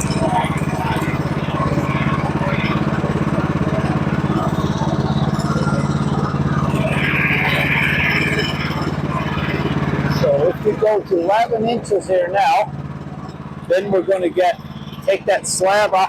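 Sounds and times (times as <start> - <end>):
sawmill engine running: 0.0 - 16.0.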